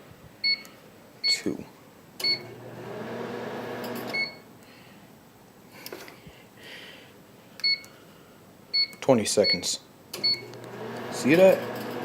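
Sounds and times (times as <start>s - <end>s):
keypad beep: 2.2s - 2.4s, 4.1s - 4.4s, 7.6s - 7.9s, 8.8s - 9.6s, 10.2s - 10.5s
microwave oven humming: 2.2s - 4.5s, 10.2s - 12.0s.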